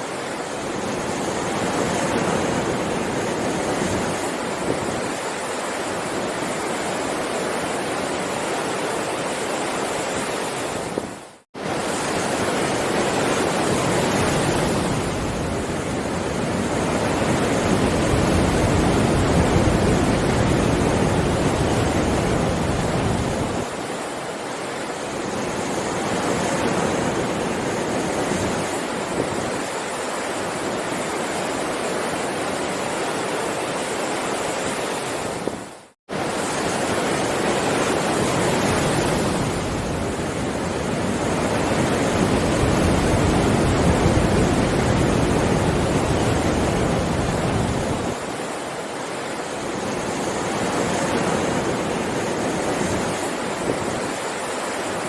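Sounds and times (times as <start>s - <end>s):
sea waves surging: 0.0s - 55.0s.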